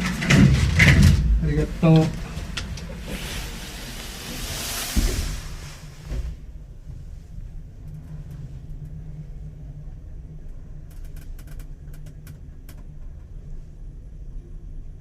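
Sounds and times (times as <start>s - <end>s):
elevator hum and rumble: 0.0s - 15.0s.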